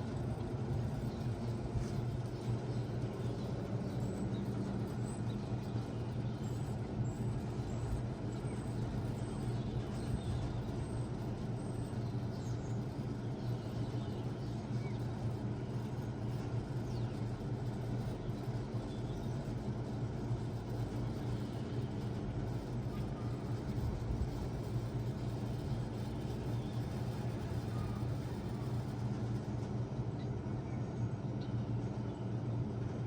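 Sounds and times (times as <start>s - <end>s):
compressor hum: 0.0s - 33.0s.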